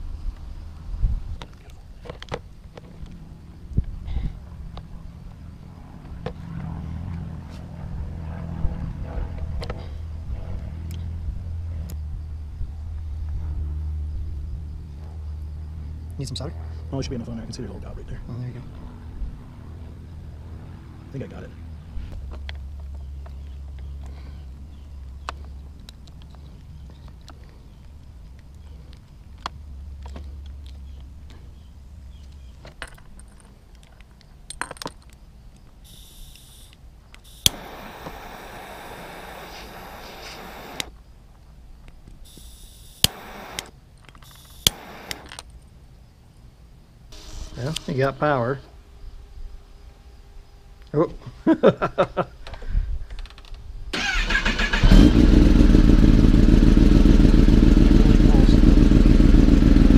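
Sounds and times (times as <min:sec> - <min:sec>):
tools clinking: 0:32.6 - 0:35.2
steady hiss: 0:35.8 - 0:41.0, 0:42.2 - 0:45.4
motorcycle starter cranking: 0:54.0 - 0:56.1
motorcycle engine idling: 0:54.5 - 0:59.9.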